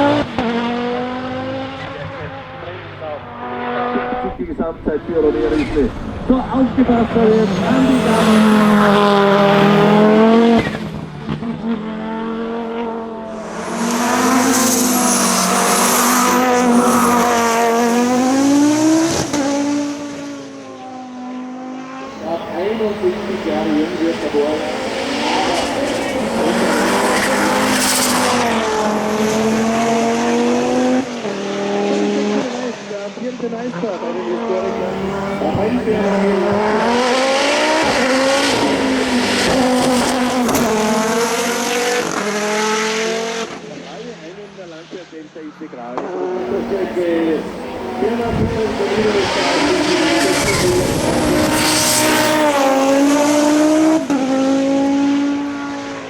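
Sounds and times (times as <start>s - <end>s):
race car engine at full throttle: 0.0s - 56.0s.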